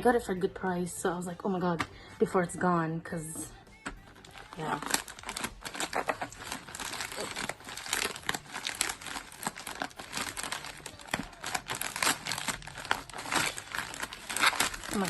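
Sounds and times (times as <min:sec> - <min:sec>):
packaging crinkling and tearing: 0:04.0 - 0:15.0.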